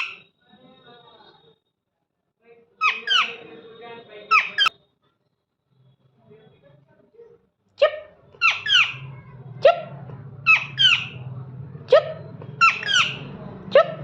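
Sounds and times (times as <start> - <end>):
parrot giving sharp calls: 2.8 - 3.5, 4.3 - 4.7, 8.0 - 11.2, 11.9 - 14.0.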